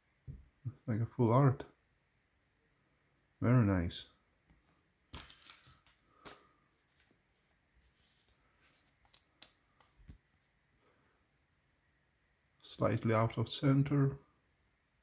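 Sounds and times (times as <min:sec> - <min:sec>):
trading cards rustling and clicking: 0:05.1 - 0:10.5.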